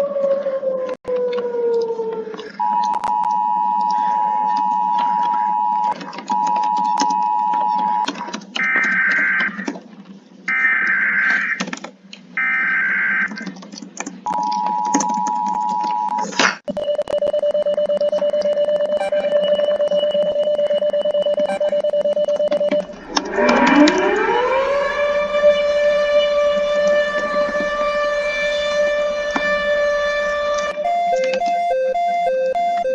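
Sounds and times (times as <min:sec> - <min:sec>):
two-tone attention signal: 0:14.4 - 0:24.9, 0:30.8 - 0:32.9
crackly noise: 0:16.1 - 0:24.4
high-pitched data tone bursts: 0:16.7 - 0:24.6, 0:30.8 - 0:32.9
siren gliding down in pitch: 0:17.2 - 0:32.9.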